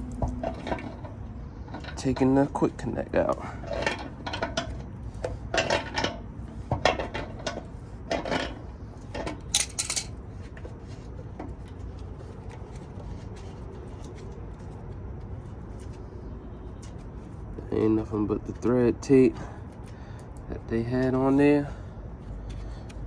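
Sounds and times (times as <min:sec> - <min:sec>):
metal tool clinking and scraping: 0:00.0 - 0:11.8
steady low hum: 0:00.0 - 0:23.0.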